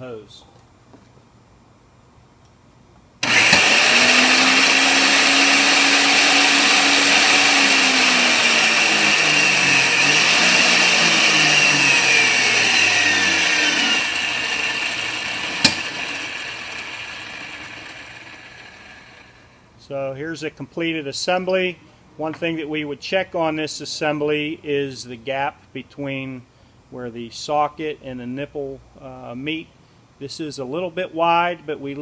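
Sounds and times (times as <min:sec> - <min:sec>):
power vise motor whining: 0:03.2 - 0:19.5
sharp click: 0:15.6 - 0:16.0.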